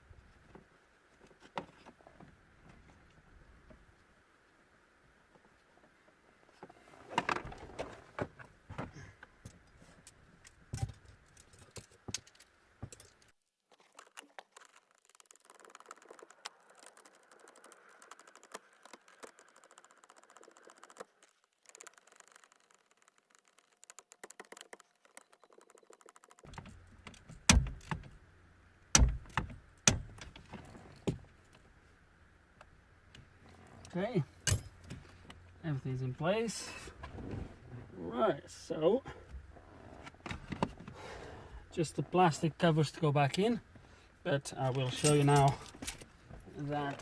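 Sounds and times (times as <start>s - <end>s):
metal parts rattling: 44.8s - 46.0s.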